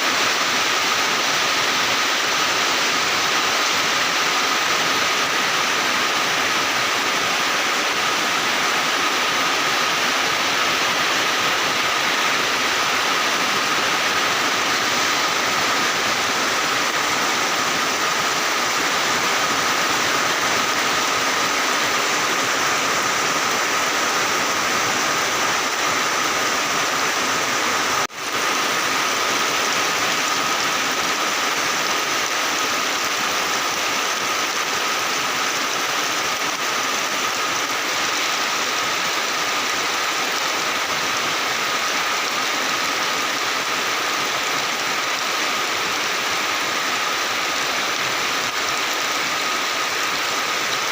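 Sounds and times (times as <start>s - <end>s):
heavy rain pouring: 0.0s - 50.9s.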